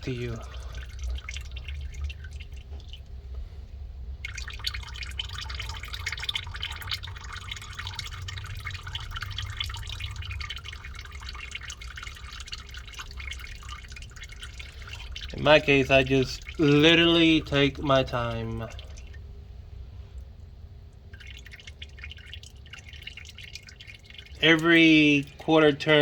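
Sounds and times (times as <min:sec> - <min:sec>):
oil dripping and trickling: 0:00.0 - 0:26.0.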